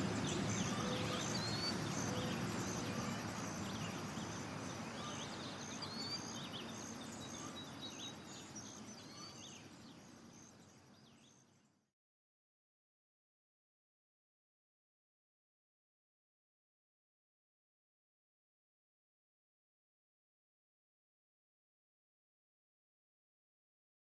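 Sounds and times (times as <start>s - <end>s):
birds chirping: 0.0s - 11.5s
low steady background hum: 0.0s - 11.9s.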